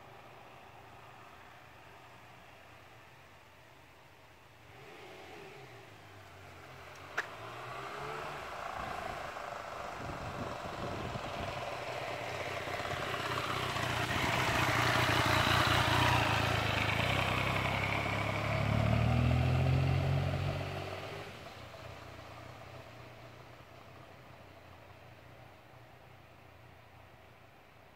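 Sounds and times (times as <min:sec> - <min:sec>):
motorcycle engine running: 0:08.8 - 0:17.2.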